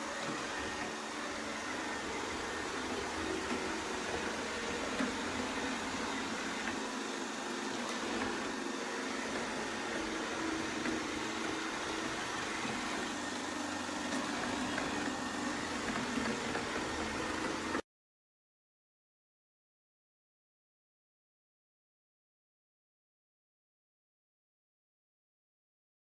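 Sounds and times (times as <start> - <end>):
robot vacuum motor hum: 0.0 - 17.8.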